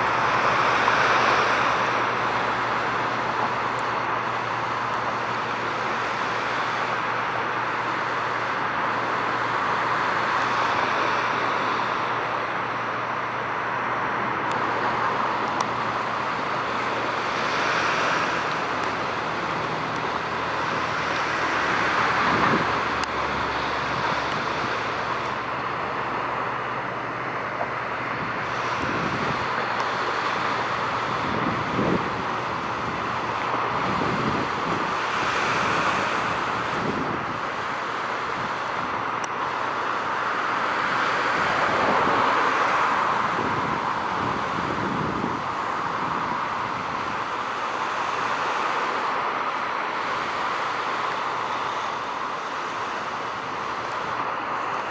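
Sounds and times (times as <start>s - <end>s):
distant road traffic: 0.0s - 54.9s
wind on microphone: 21.6s - 23.0s, 28.2s - 29.6s, 30.9s - 37.6s, 43.0s - 47.3s.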